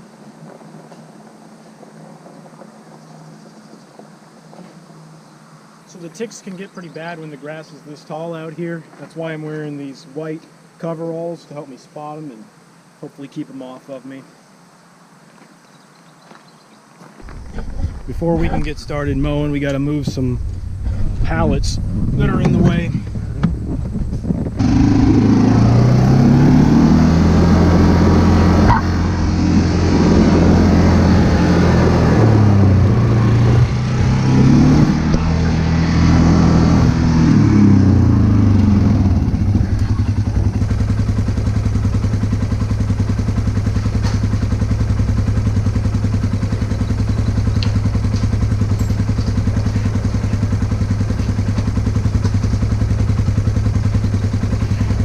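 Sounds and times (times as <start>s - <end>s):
vehicle engine revving and idling: 17.2s - 55.0s.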